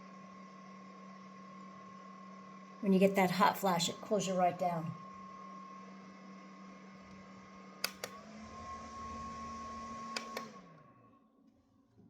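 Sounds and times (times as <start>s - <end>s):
small electric fan humming: 0.0s - 10.8s
fan switch clicks: 7.8s - 8.2s, 10.1s - 10.5s.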